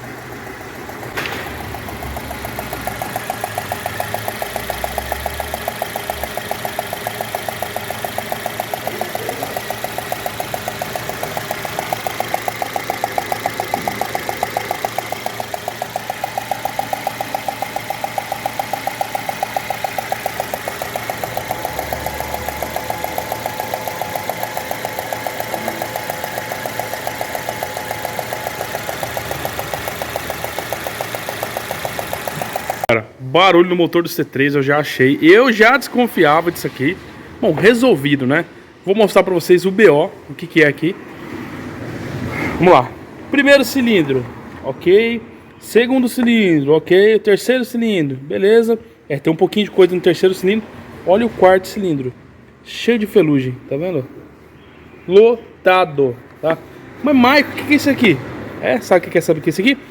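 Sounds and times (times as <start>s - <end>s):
car engine idling with ticking knock: 0.0s - 32.9s
sharp click: 1.0s - 32.9s.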